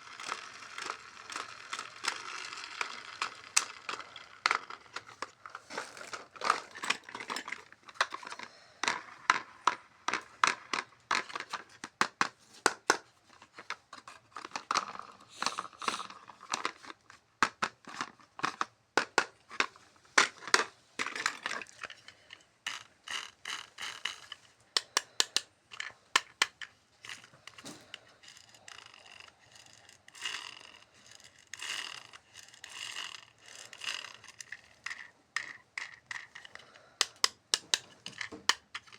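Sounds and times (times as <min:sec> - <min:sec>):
plastic and cardboard crinkling: 0:00.0 - 0:08.6.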